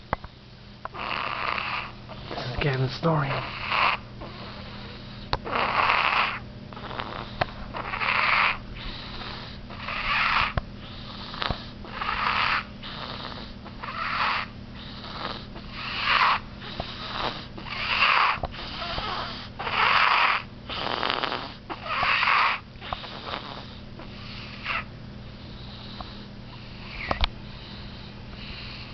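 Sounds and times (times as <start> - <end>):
baby snoring: 0.9 - 28.9.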